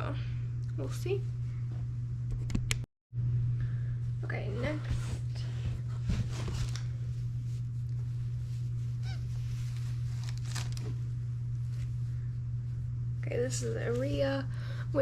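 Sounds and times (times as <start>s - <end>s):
steady low hum: 0.0s - 15.0s
clothes rustling: 4.6s - 12.8s.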